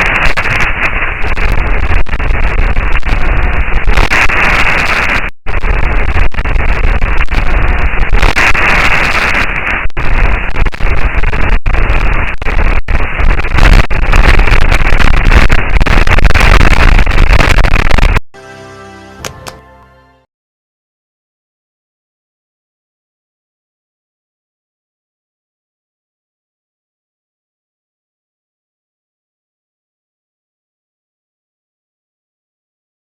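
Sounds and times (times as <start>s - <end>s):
harsh crackling noise: 0.0s - 20.0s.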